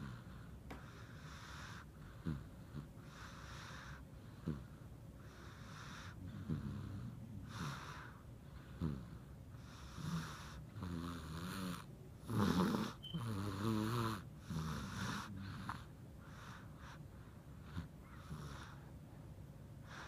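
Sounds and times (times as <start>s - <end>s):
person snoring: 5.6s - 15.9s.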